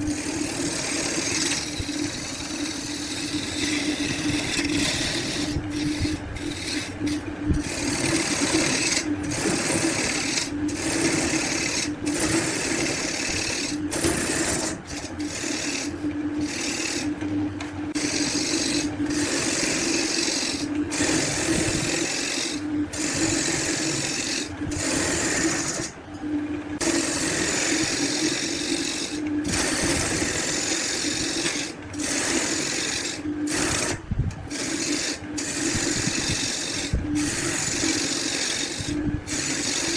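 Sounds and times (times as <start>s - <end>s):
rasping on wood: 0.0s - 17.2s, 17.9s - 26.0s, 26.8s - 39.9s
power tool motor hum: 0.0s - 26.0s, 26.8s - 39.9s.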